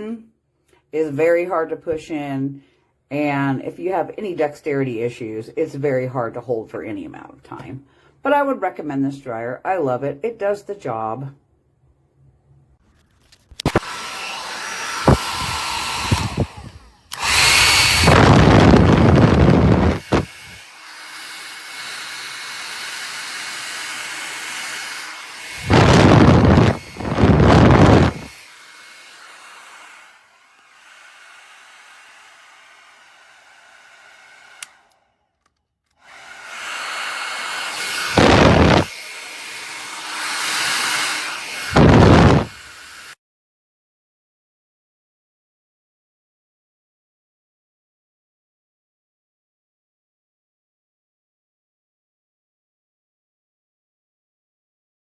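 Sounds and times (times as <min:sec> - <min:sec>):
hair dryer blowing: 0:13.6 - 0:35.1, 0:36.0 - 0:43.2
airflow rushing on microphone: 0:13.7 - 0:20.6, 0:25.4 - 0:28.5, 0:36.7 - 0:42.8.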